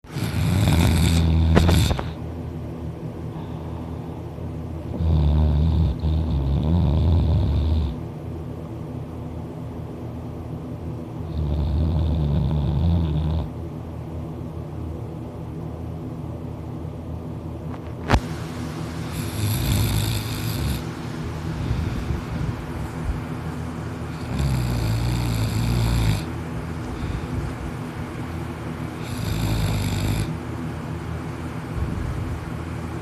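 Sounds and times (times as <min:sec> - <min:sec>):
person snoring loudly: 0:00.1 - 0:02.2, 0:05.0 - 0:08.0, 0:11.3 - 0:13.5, 0:19.1 - 0:20.9, 0:24.1 - 0:26.3, 0:29.0 - 0:30.4.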